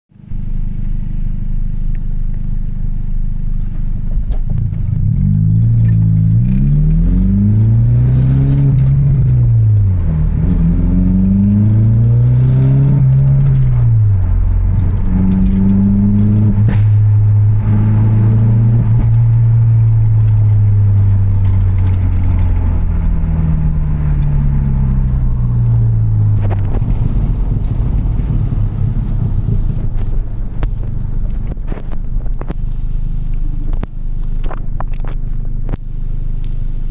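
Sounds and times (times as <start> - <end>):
car exhaust idling and revving: 0.1 - 36.9.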